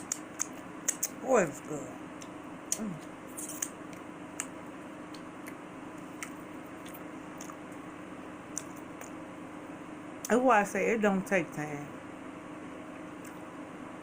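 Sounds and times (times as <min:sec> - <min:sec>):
wet chewing clicks and smacks: 0:00.0 - 0:01.2, 0:02.1 - 0:07.8, 0:08.5 - 0:09.2.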